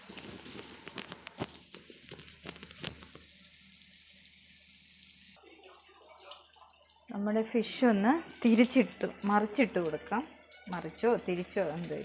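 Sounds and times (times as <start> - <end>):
oil crackling pops: 0.0 - 3.5
fish sizzling in a pan: 0.0 - 12.0.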